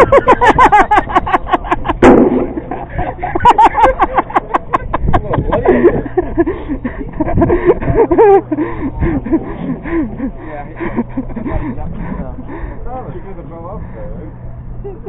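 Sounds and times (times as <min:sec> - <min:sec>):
sharp thump: 0:02.0 - 0:02.6
people talking indistinctly: 0:02.8 - 0:15.0.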